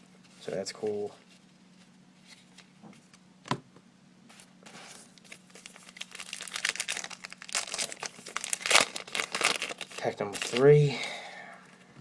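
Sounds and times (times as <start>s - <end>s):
plastic wrapper crinkling: 5.1s - 10.9s.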